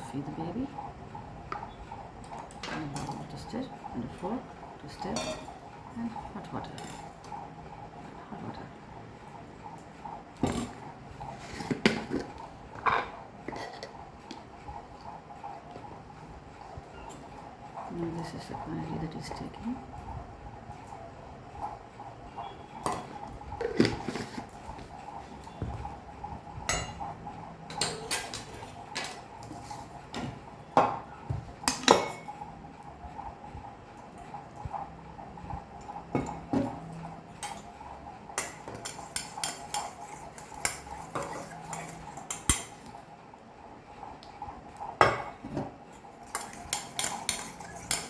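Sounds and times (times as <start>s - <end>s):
metal utensil clinking against a bowl: 5.1s - 5.6s, 26.7s - 27.0s, 27.7s - 29.8s, 31.7s - 32.3s, 37.4s - 37.8s, 38.4s - 42.9s, 46.2s - 48.0s.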